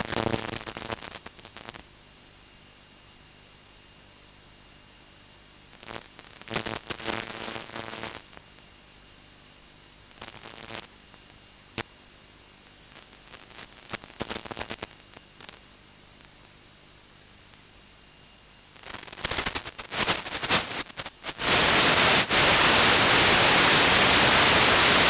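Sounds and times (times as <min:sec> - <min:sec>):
steady static hiss: 0:00.0 - 0:25.0
bursts of crackling noise: 0:18.8 - 0:25.0.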